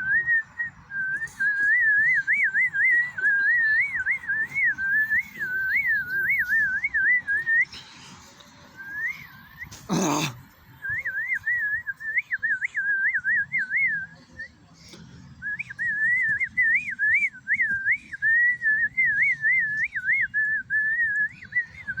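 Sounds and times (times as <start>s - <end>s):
person whistling a tune: 0.0s - 7.7s, 8.8s - 9.7s, 15.4s - 22.0s.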